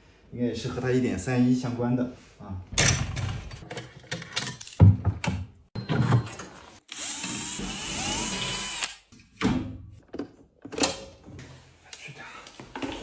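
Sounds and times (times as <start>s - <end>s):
parts knocking and clattering: 2.7s - 7.5s
power drill whining: 6.8s - 9.0s.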